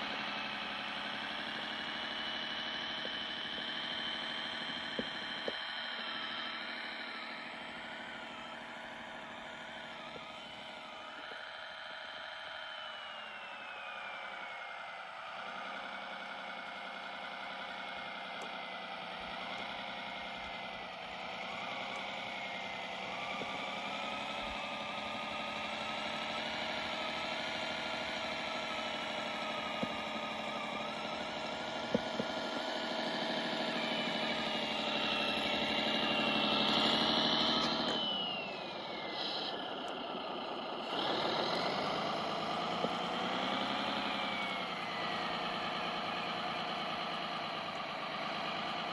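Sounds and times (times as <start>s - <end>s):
toy vehicle motor whining: 20.4s - 48.0s.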